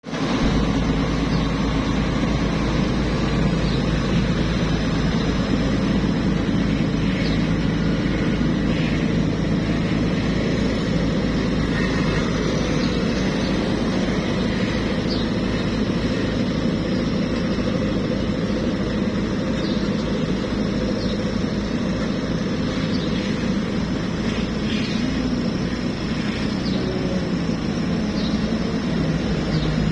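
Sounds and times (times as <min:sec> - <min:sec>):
heavy machine engine running: 0:00.0 - 0:29.9.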